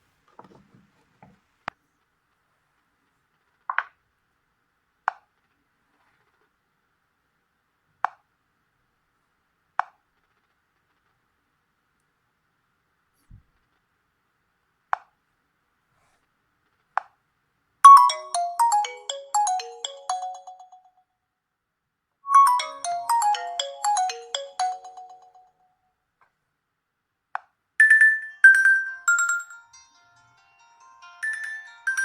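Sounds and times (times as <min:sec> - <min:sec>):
bell-like ringtone: 0:17.8 - 0:21.0, 0:22.3 - 0:25.7, 0:27.8 - 0:32.0.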